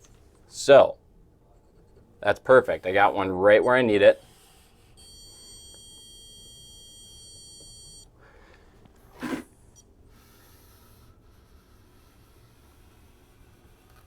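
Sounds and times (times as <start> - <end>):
stud finder beeping: 2.5 - 8.1
short scratchy sound: 9.2 - 9.5.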